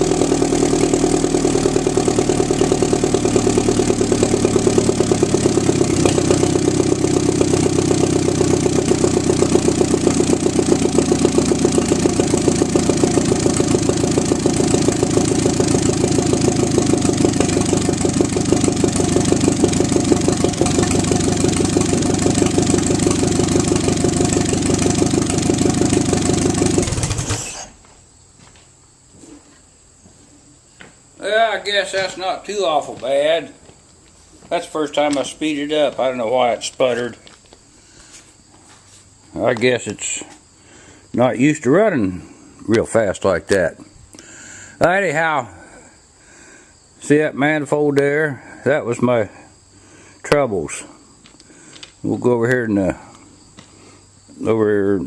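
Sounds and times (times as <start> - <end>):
tractor engine running: 0.0 - 27.9, 34.6 - 37.5.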